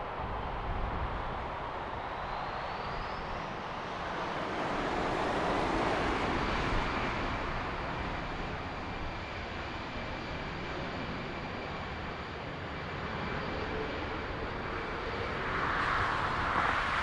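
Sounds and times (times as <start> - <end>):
jet engines rushing past: 0.0 - 17.0.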